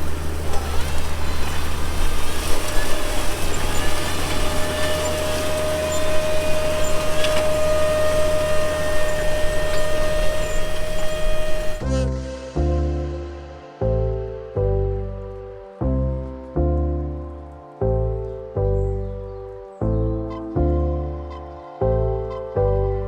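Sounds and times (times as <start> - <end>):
tractor engine running: 0.0 - 12.3
steady whine: 0.0 - 13.5.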